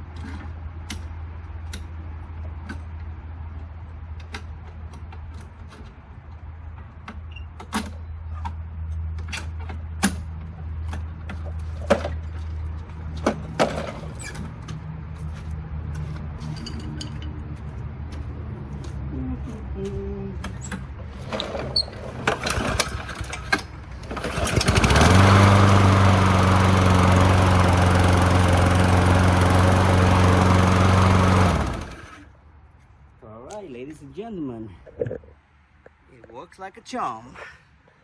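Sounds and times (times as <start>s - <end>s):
lawn mower engine running: 21.2s - 32.3s.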